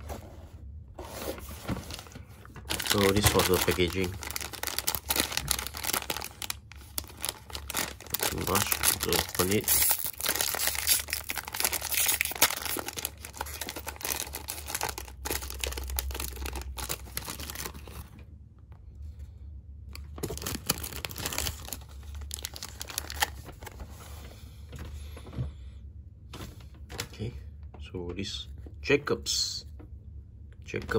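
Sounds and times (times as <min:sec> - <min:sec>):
wrapper tearing and crinkling: 0:02.6 - 0:18.1, 0:20.2 - 0:23.8.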